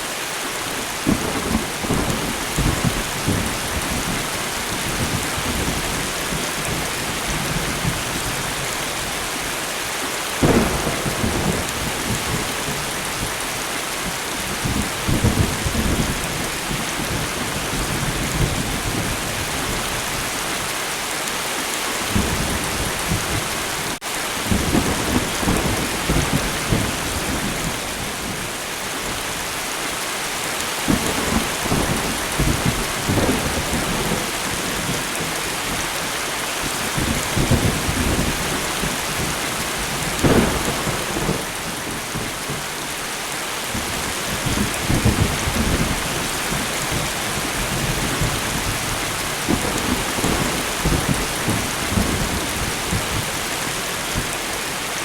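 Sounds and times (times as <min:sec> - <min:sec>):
light rain: 0:00.0 - 0:55.0
thunder: 0:10.4 - 0:13.4, 0:30.8 - 0:35.8, 0:36.7 - 0:42.6, 0:43.7 - 0:54.4.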